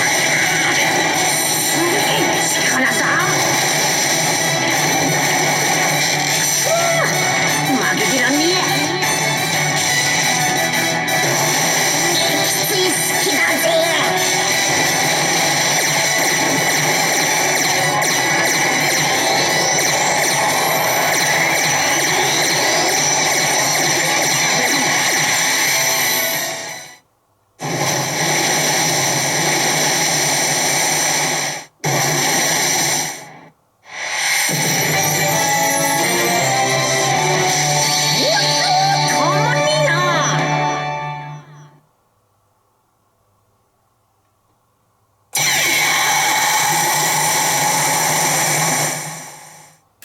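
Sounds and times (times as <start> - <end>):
loud dense noise from speaker: 0.0 - 3.5
pachinko machine hiss: 27.6 - 33.3, 33.9 - 38.2, 45.4 - 49.8.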